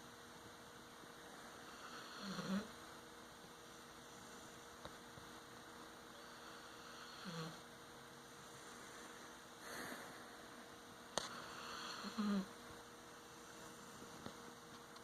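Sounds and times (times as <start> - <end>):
faint electrical hum: 0.0 - 15.0
dog snoring: 1.5 - 2.8, 6.2 - 7.7, 11.2 - 12.5.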